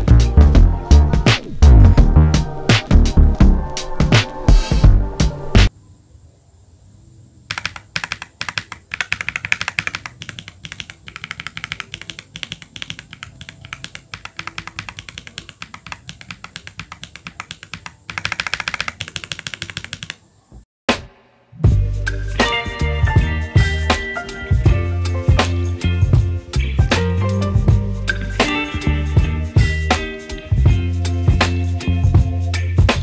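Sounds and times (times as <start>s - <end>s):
mechanical keyboard key clacks: 7.5s - 20.2s.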